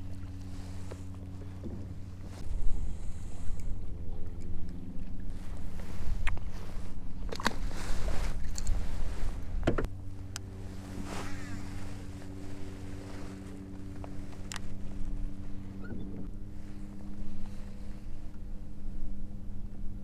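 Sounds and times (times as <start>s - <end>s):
low rumble: 0.0s - 20.0s
steady hum: 0.0s - 20.0s
sharp knocks against hull: 9.6s - 9.9s.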